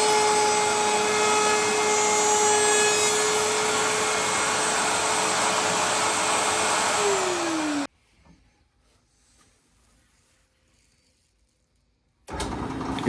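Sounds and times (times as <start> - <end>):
wood router whining: 0.0 - 7.9, 12.3 - 13.0.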